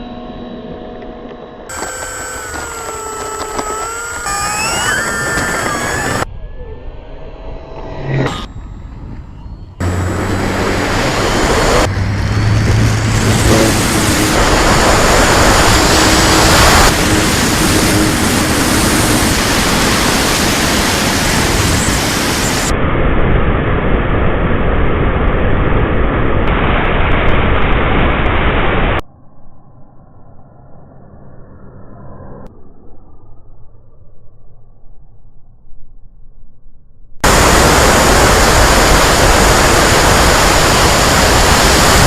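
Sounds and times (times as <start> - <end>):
faint motor hum: 1.7 - 6.3
wind and propeller noise: 1.7 - 6.3, 7.2 - 34.6, 37.2 - 42.0.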